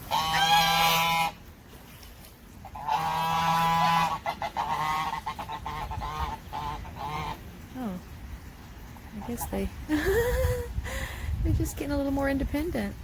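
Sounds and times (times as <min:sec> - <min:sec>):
goose honking: 0:00.0 - 0:01.4, 0:02.6 - 0:07.5.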